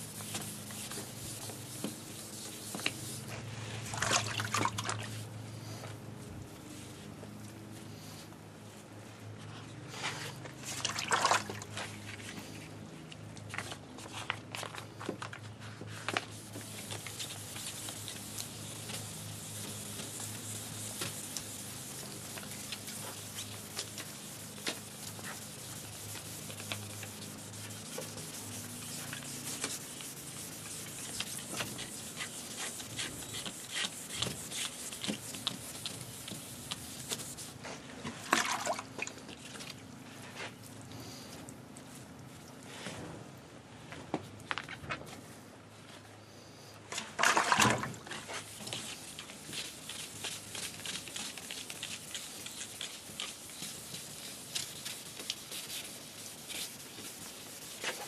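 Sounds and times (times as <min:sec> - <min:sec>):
wet sanding plastic by hand: 0:00.0 - 0:05.3, 0:15.8 - 0:37.7, 0:47.2 - 0:58.0.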